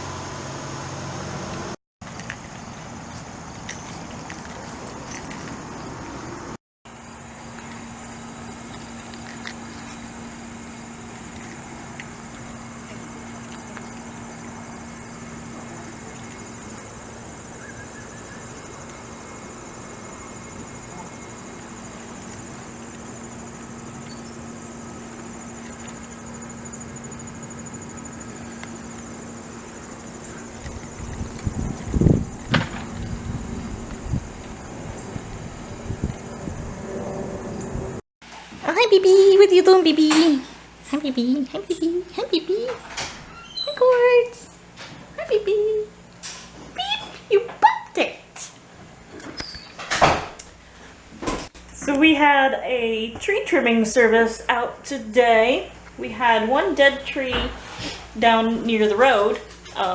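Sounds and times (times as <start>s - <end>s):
high insect drone: 0.1s - 38.0s
loud thumps: 32.0s - 33.4s.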